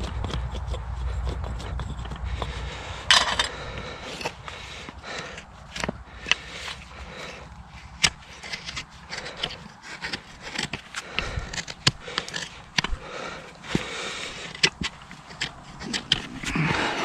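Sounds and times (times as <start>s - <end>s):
tools scraping a hoof: 0.0s - 17.0s.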